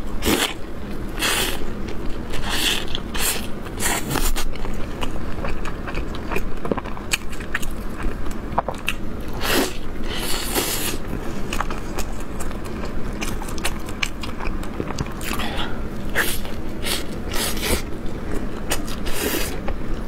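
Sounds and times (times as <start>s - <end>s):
wet chewing clicks: 1.9s - 9.0s, 11.5s - 15.5s.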